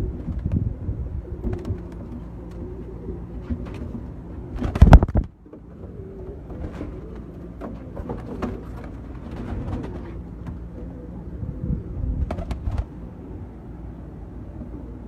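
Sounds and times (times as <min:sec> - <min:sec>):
pigeons cooing: 0:00.0 - 0:15.0
thump or wing flutter: 0:04.6 - 0:05.3, 0:12.2 - 0:12.9.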